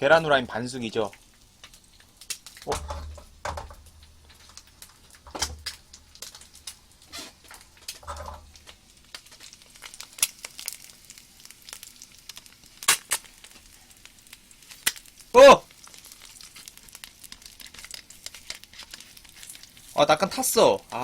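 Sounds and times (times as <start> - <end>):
egg sizzling in oil: 0.0 - 21.0
oil popping and crackling: 0.0 - 21.0.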